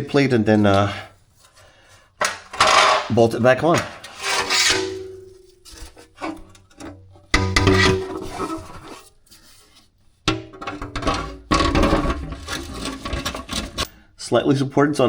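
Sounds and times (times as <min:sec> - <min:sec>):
metal plate scraping and rattling: 0:02.2 - 0:13.9.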